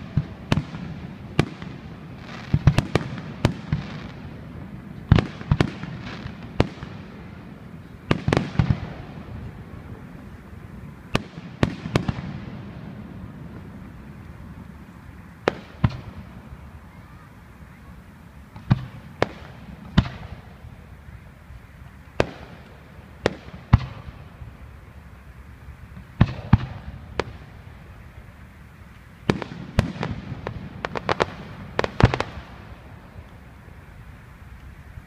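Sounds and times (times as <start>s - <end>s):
fireworks bangs and cracks: 0.0s - 17.8s, 18.4s - 20.8s, 22.1s - 24.4s, 25.9s - 27.7s, 28.9s - 33.6s.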